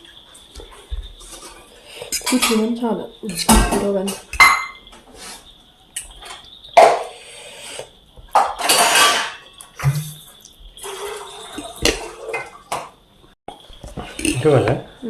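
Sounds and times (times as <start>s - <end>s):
cutlery clinking on plate: 8.4s - 9.5s.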